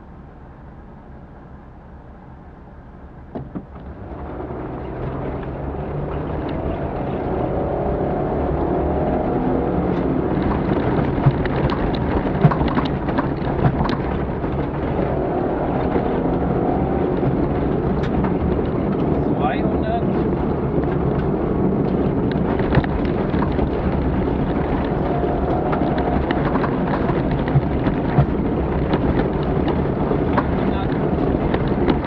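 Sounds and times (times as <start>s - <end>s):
vehicle engine running: 0.0s - 32.0s
knocks and rattles: 9.9s - 32.0s.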